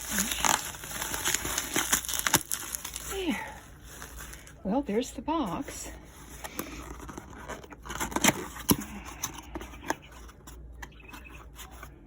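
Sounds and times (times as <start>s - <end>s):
packaging scraping and clicking: 0.0s - 3.2s, 6.2s - 11.9s.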